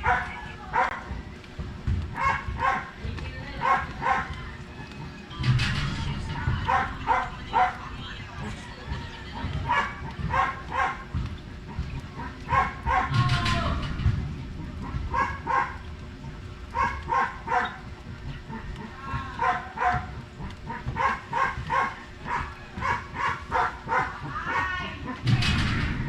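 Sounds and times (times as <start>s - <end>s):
dog barking: 0.0s - 1.0s, 2.2s - 3.0s, 3.6s - 4.3s, 6.6s - 7.8s, 9.6s - 11.0s, 12.2s - 13.2s, 14.8s - 15.8s, 16.7s - 17.8s, 19.4s - 20.1s, 20.7s - 24.7s.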